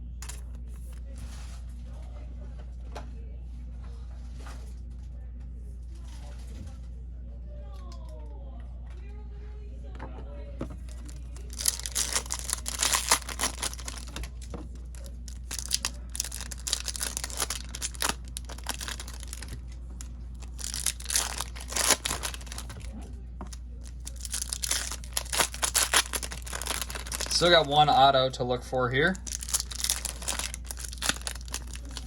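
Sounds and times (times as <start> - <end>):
plastic and foil packaging crinkling: 0.1 - 1.5, 10.7 - 28.1, 29.0 - 32.0.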